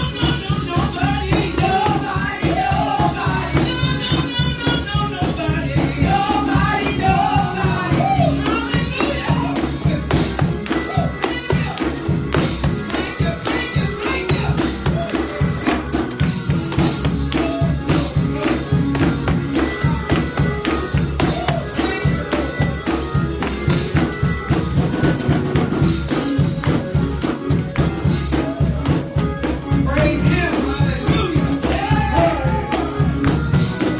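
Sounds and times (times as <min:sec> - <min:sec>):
person singing: 0:00.0 - 0:16.0, 0:28.0 - 0:33.9
bass line: 0:00.0 - 0:33.9
gospel music: 0:00.0 - 0:33.9
tambourine rhythm: 0:00.0 - 0:33.9.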